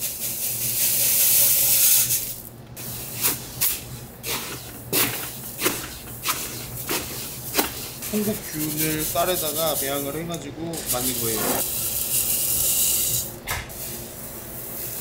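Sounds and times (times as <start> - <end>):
dry granules hissing as poured: 0.0 - 4.4, 10.8 - 15.0.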